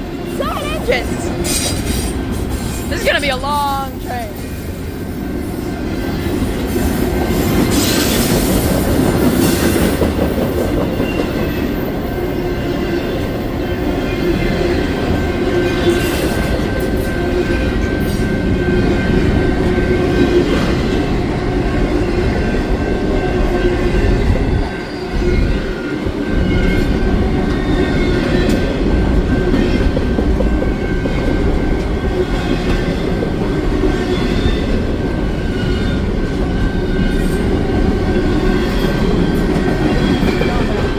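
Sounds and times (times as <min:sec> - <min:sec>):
train wheels clattering: 0:05.4 - 0:13.2, 0:25.6 - 0:40.9.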